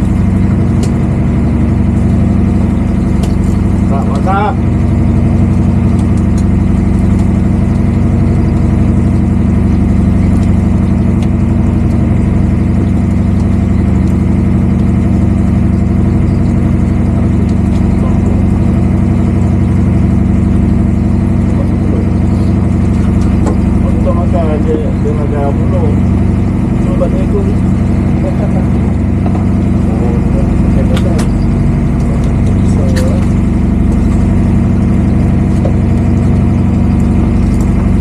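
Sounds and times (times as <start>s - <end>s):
boat engine droning: 0.0s - 38.0s.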